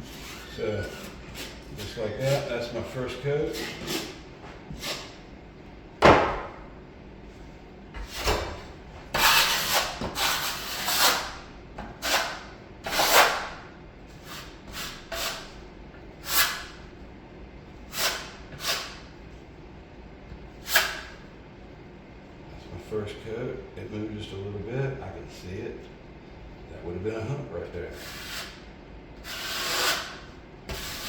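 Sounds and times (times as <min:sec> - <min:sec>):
drywall knife scraping: 0:00.0 - 0:02.5, 0:03.5 - 0:05.2, 0:09.1 - 0:13.6, 0:14.2 - 0:15.5, 0:16.2 - 0:16.8, 0:17.9 - 0:19.1, 0:20.6 - 0:21.1, 0:27.9 - 0:31.0.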